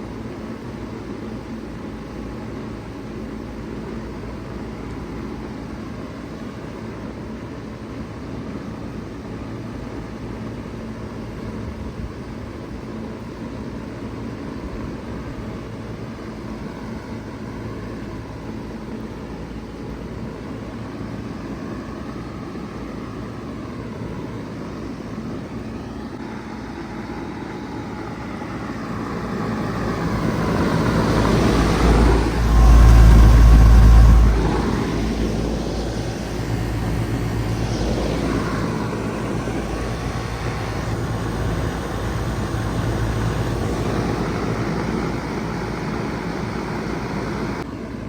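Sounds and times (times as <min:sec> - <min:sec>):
heat pump humming and hissing: 0:00.0 - 0:48.0
heavy low rumble: 0:28.4 - 0:47.6.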